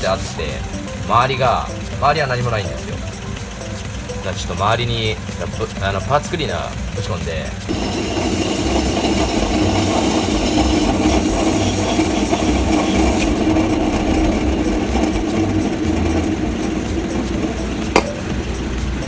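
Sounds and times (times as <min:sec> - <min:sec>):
aerosol spray hiss: 0:00.0 - 0:00.4, 0:07.7 - 0:13.4
machine running with low rumble: 0:00.0 - 0:19.0.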